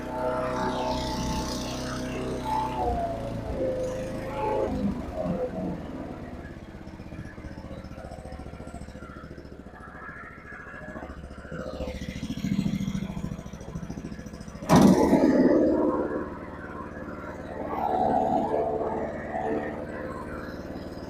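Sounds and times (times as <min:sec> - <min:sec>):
wood chipper engine running: 0:00.0 - 0:21.0
sudden loud burst of noise: 0:14.6 - 0:16.4.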